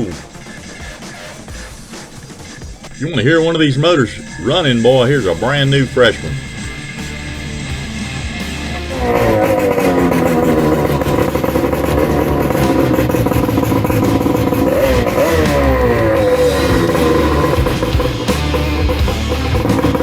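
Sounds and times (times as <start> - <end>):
outboard engine running: 4.3 - 20.0.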